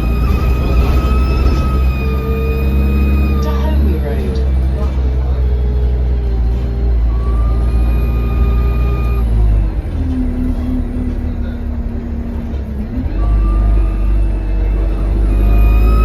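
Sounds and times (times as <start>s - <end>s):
high turbo whistle: 0.0s - 3.8s
bus engine rumbling: 0.0s - 16.0s.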